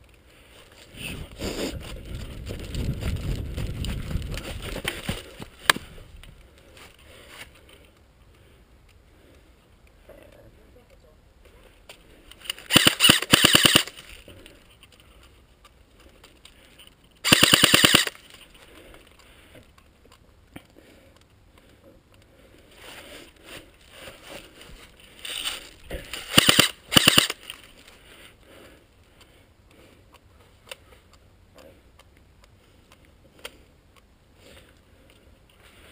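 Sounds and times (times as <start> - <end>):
airsoft rifle full-auto bursts: 12.6 - 14.0, 17.2 - 18.2, 26.2 - 27.5.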